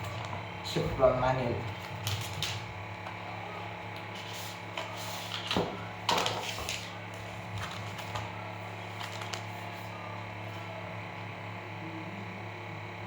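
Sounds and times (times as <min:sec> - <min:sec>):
low electrical hum: 0:00.0 - 0:13.0
paper and cardboard rustling: 0:04.1 - 0:09.9.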